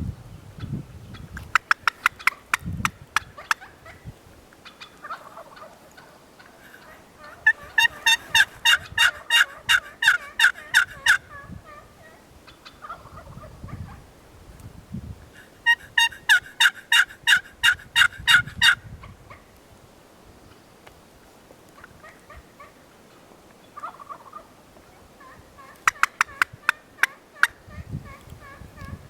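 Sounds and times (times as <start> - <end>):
turkey clucking: 1.1 - 14.0, 15.4 - 19.4, 21.8 - 29.0
turkey yelping: 1.5 - 4.0, 4.6 - 14.0, 15.6 - 19.4, 21.8 - 22.8, 23.8 - 24.6, 25.2 - 29.0.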